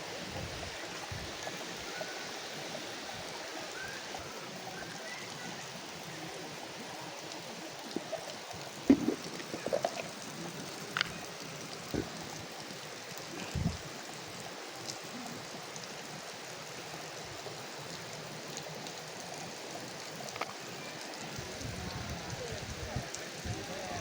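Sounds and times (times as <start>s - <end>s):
river water rushing: 0.0s - 21.6s.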